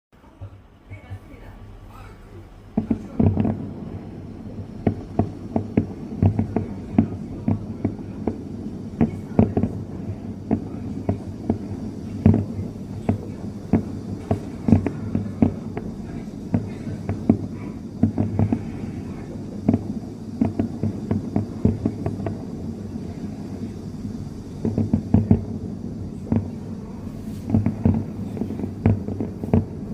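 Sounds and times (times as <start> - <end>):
fireworks bangs and booms: 0.4 - 29.9.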